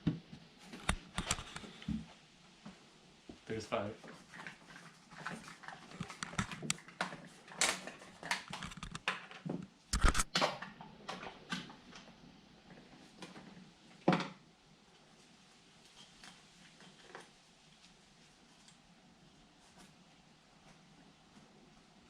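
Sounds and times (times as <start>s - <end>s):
plastic containers clicking and knocking: 5.2s - 11.7s.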